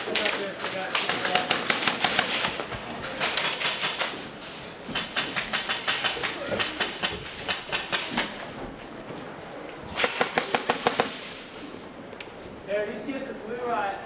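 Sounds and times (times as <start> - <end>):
airsoft gun shots: 9.9 - 11.4.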